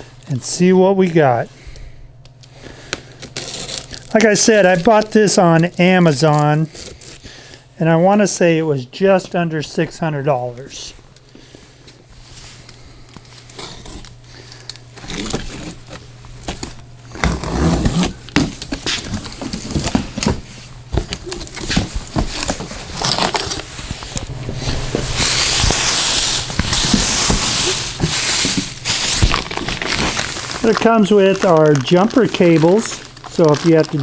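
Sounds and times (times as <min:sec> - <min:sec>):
loud packing rustle: 0:11.2 - 0:34.0
faint low hum: 0:19.2 - 0:31.0
cardboard box handling: 0:21.4 - 0:30.3.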